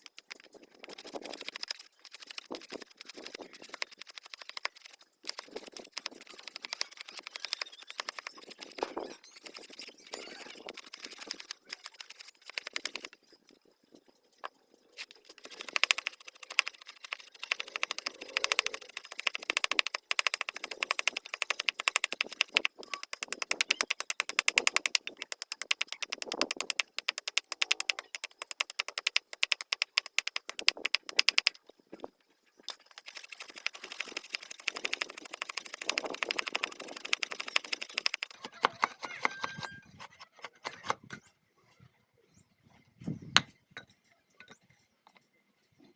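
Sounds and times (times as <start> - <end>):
hand tool scraping wood: 15.0 - 31.6.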